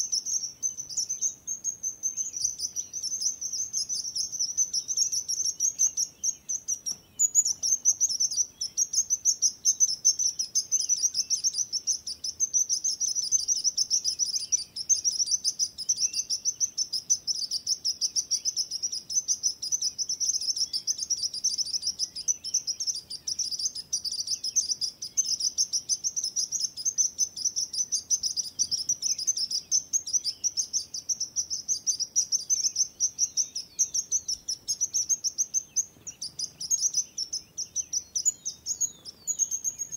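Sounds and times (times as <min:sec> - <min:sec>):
sparrow chirping: 0:00.0 - 0:39.9.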